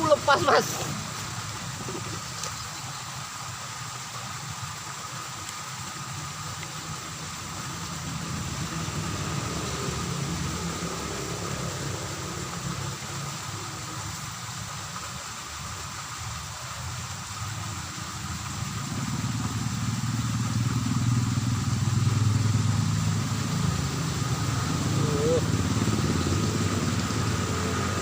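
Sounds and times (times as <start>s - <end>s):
vehicle engine passing by: 7.0s - 13.8s, 18.6s - 28.0s.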